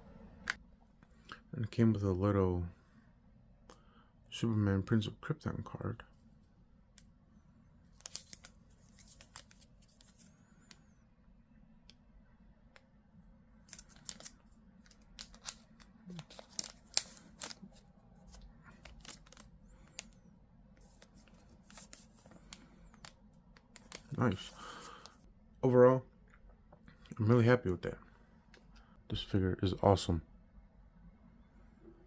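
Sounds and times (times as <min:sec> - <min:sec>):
low background hum: 0:00.0 - 0:32.0
clicks and packaging rustles: 0:07.9 - 0:10.8, 0:13.6 - 0:25.2.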